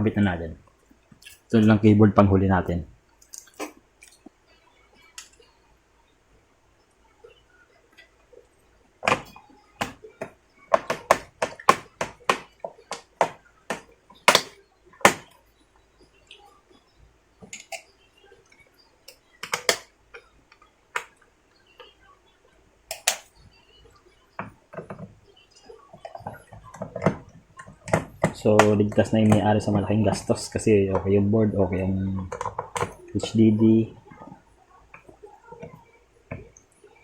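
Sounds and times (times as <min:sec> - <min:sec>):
plastic clicks and knocks: 0:09.0 - 0:15.4, 0:19.1 - 0:21.2, 0:22.9 - 0:23.5, 0:24.4 - 0:25.2, 0:25.9 - 0:30.3, 0:32.2 - 0:33.4.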